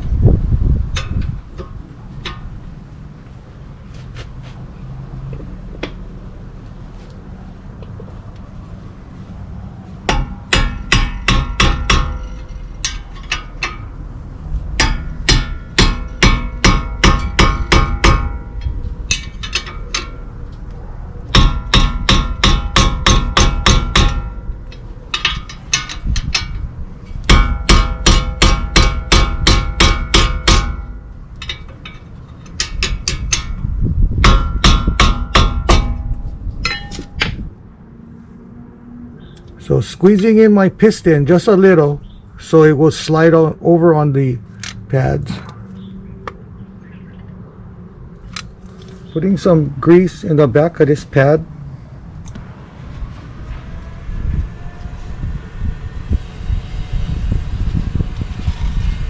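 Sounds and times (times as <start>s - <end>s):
impact wrench hammering: 10.1s - 14.0s, 14.8s - 20.2s, 21.3s - 26.6s, 27.2s - 37.4s.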